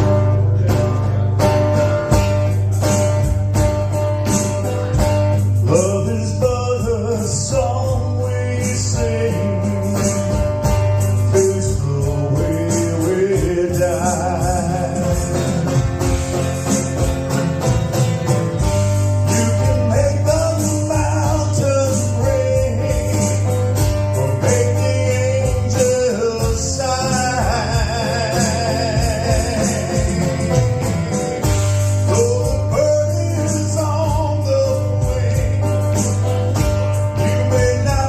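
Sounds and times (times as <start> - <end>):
bass: 0.0 - 38.0
drums: 0.0 - 38.0
guitar: 0.0 - 38.0
person singing: 5.5 - 16.2, 19.1 - 38.0.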